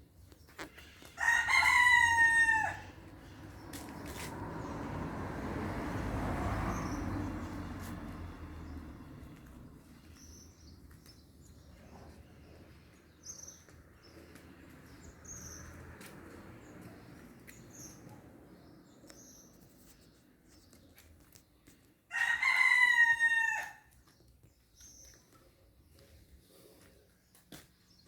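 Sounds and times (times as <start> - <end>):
rooster crowing: 1.0 - 3.1, 22.1 - 23.9.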